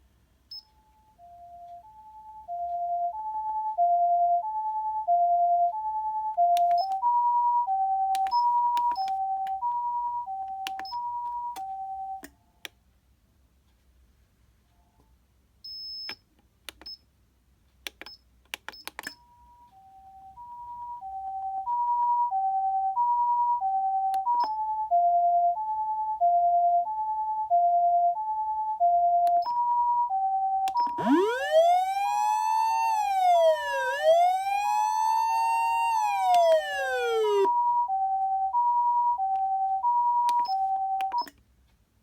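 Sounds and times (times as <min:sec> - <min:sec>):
two-tone ambulance siren: 0:29.6 - 0:41.0
sharp clicks: 0:30.7 - 0:37.5.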